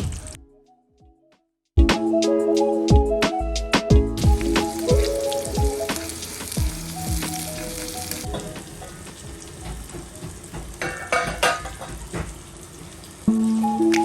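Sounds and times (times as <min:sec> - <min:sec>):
background music with sustained notes: 0:00.2 - 0:10.6, 0:13.3 - 0:14.0
food sizzling in hot oil: 0:04.2 - 0:14.0.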